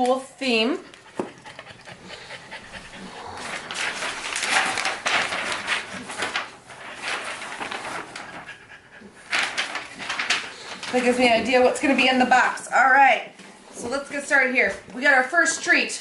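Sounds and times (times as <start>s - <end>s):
dogs panting: 0.4s - 6.0s, 6.8s - 11.6s.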